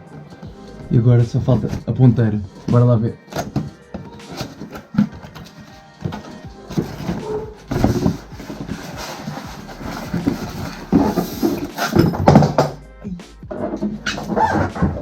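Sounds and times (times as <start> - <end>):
cardboard packaging rustling: 0.0 - 12.4.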